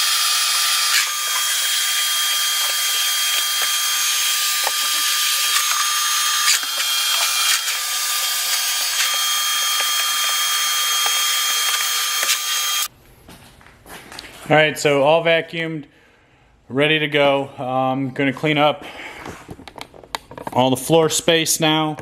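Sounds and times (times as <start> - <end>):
vacuum cleaner motor whine: 0.0 - 12.9.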